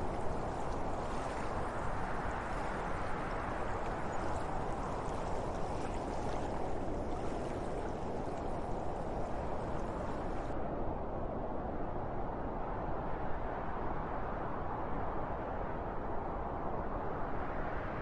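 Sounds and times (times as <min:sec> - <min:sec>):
wind blowing steadily: 0:00.0 - 0:18.0.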